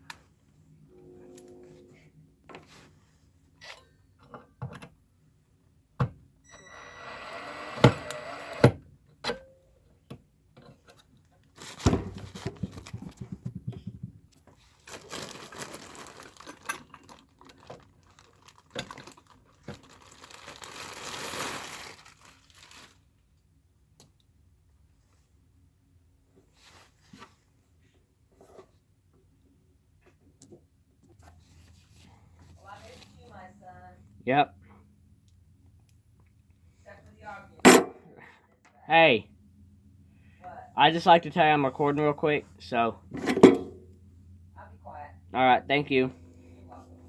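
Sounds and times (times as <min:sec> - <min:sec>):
sharp knocks and clicks: 0:12.4 - 0:14.3
plastic packaging rustling and tearing: 0:14.6 - 0:23.1.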